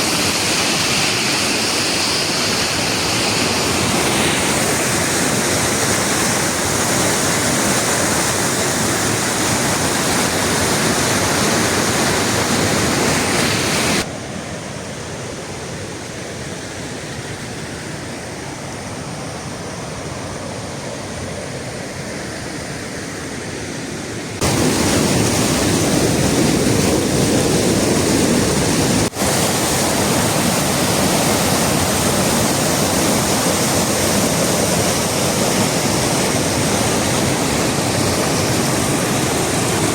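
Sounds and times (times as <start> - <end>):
waterfall rushing: 0.0 - 14.6, 23.4 - 39.9.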